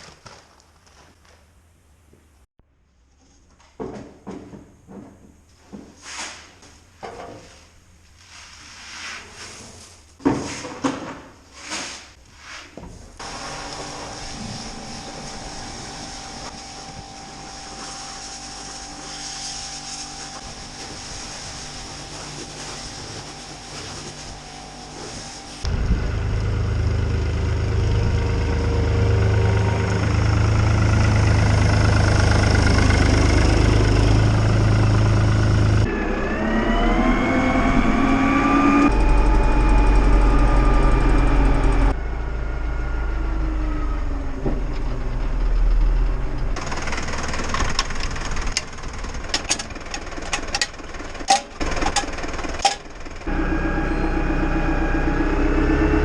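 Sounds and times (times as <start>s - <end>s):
farm machinery engines running: 13.2s - 56.0s.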